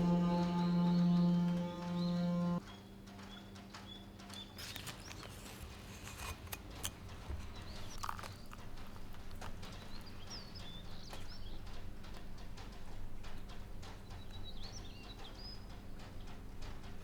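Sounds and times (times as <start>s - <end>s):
music: 0.0s - 4.6s, 8.1s - 17.0s.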